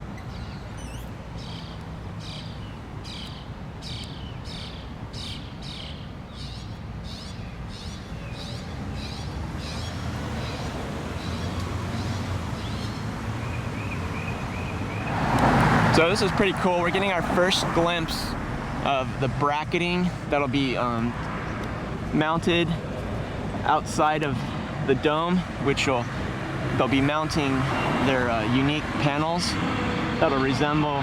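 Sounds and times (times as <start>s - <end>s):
distant road traffic rumble: 0.0s - 31.0s
small bird chirping: 0.1s - 15.1s.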